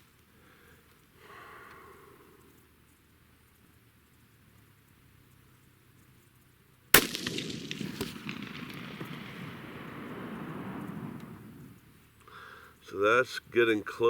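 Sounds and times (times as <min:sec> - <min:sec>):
rifle shot: 0:06.9 - 0:11.8.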